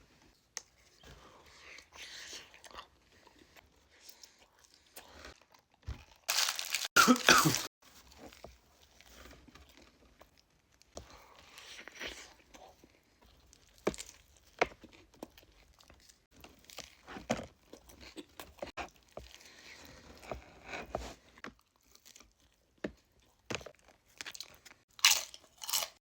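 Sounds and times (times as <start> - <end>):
food wrappers crinkling and tearing: 5.4 - 7.7.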